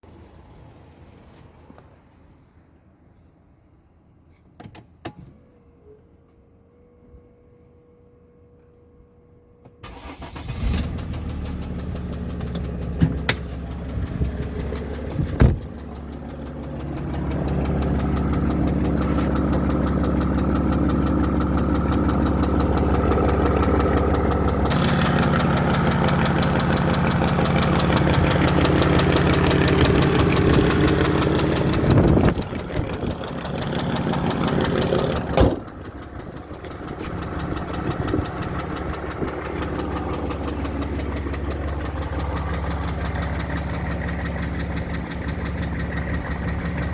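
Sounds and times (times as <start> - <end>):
diesel engine knocking: 11.1 - 46.9.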